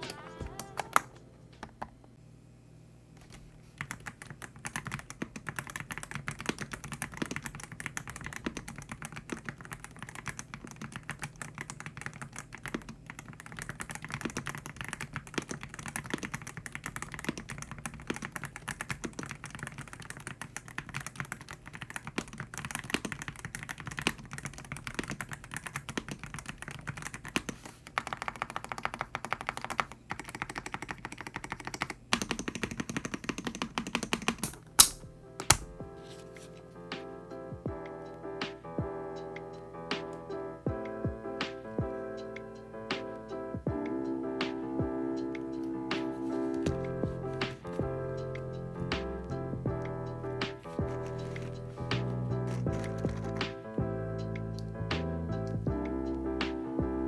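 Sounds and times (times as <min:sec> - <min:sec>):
typing on mechanical keyboard: 0:03.8 - 0:35.8, 0:49.8 - 0:53.6.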